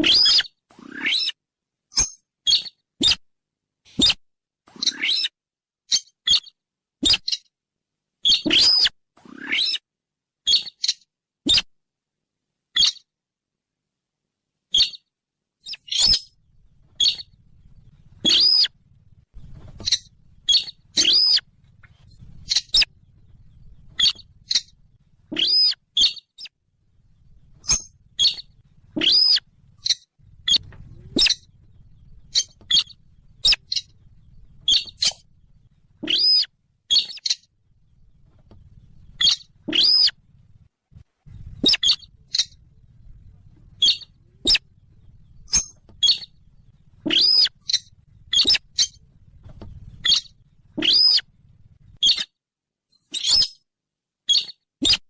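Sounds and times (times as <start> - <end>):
high bird call notes: 18.2 - 18.7, 19.5 - 26.5, 27.6 - 35.2, 39.0 - 40.1, 43.8 - 44.6, 45.2 - 46.4, 47.1 - 49.0, 50.0 - 51.2.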